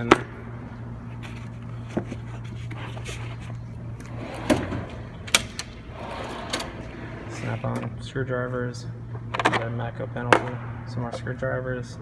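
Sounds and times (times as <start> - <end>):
steady low hum: 0.0 - 12.0
clunks and clicks: 2.7 - 8.0
steel drawers shutting and opening: 2.7 - 8.0.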